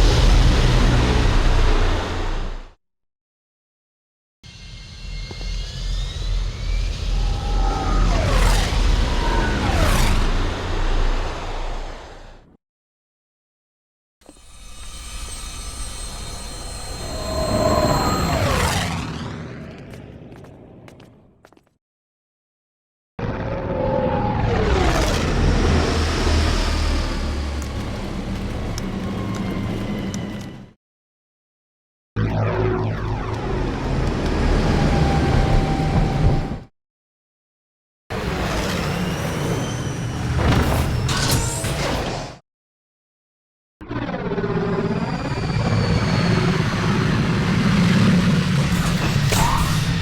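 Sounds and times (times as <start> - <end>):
whine gliding down in pitch: 5.2 - 12.1, 15.8 - 20.0, 32.2 - 36.7
high whining tones: 14.4 - 19.3.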